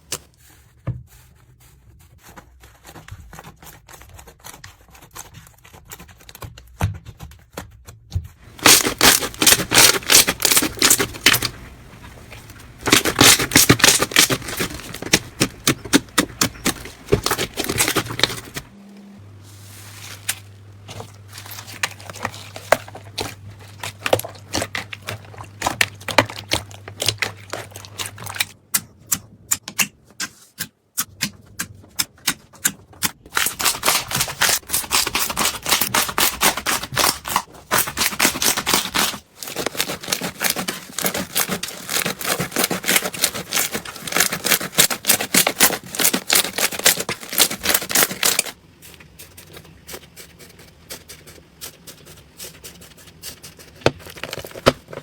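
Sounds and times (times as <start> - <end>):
slime squeezed crackling and popping: 8.6 - 11.8.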